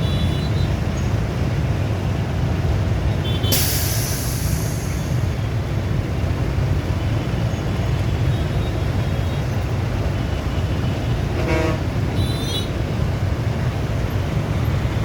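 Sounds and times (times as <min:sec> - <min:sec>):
low traffic rumble: 0:00.0 - 0:15.0
vehicle horn toot: 0:11.4 - 0:12.7.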